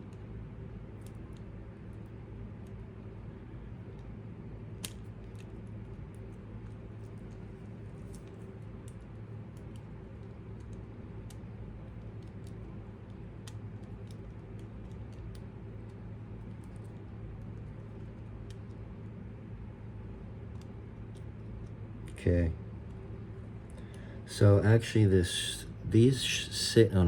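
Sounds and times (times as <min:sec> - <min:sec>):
steady low hum: 0:00.0 - 0:27.0
clicks and taps of small parts: 0:04.8 - 0:05.6.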